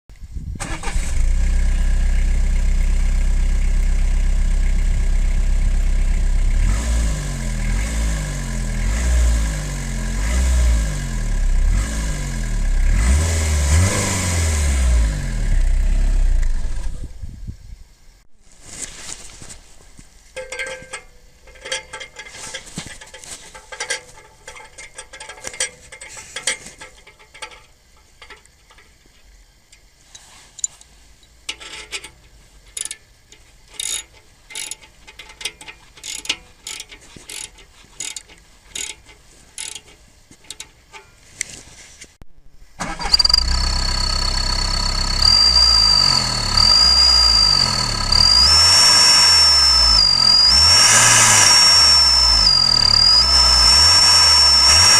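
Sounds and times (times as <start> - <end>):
clicks and knocks: 20.4 - 29.2
high-pitched turbo whistle: 43.1 - 54.9
car engine running loudly: 43.4 - 54.9.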